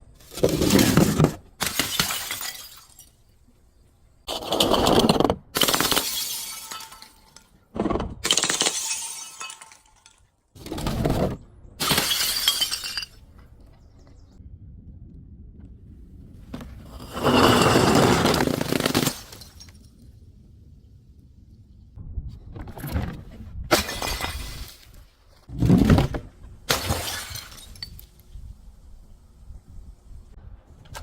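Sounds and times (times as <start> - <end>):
glass bottles shattering: 1.6 - 3.3, 5.6 - 7.5, 8.2 - 10.2, 11.8 - 13.2, 17.0 - 19.9, 23.7 - 24.9, 26.7 - 28.1.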